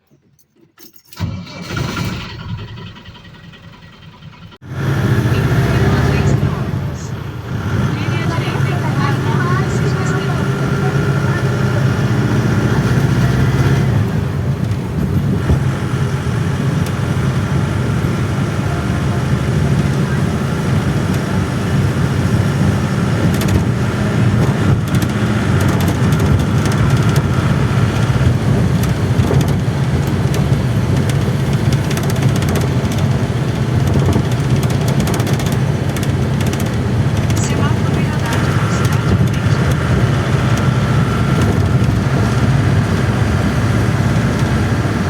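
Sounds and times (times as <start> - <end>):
engine and road drone: 1.2 - 45.0
short rattles: 24.4 - 37.5.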